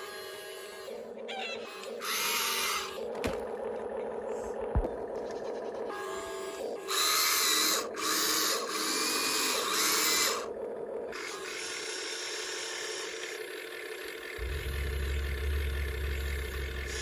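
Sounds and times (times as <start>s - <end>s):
toy electric motors whirring: 0.0s - 3.4s, 5.3s - 14.4s
faint steady hum: 14.3s - 17.0s.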